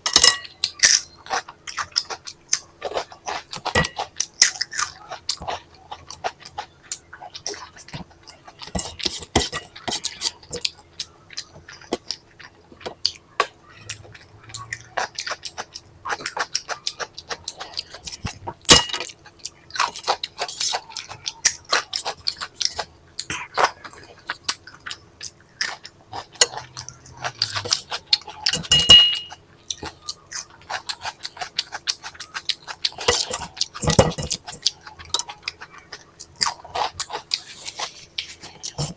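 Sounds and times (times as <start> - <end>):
chewing food: 0.0 - 38.9
clink on a plate: 28.6 - 29.4.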